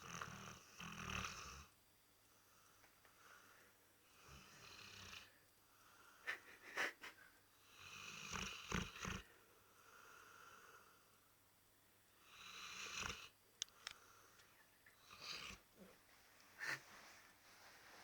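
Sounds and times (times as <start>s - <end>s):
dog snoring: 0.0s - 1.7s, 4.1s - 5.4s, 7.6s - 9.3s, 12.2s - 13.4s, 15.0s - 15.7s.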